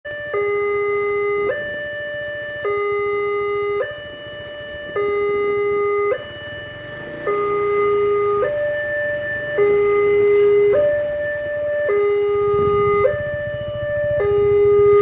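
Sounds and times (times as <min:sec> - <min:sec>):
level crossing two-tone alarm: 0:00.1 - 0:15.0.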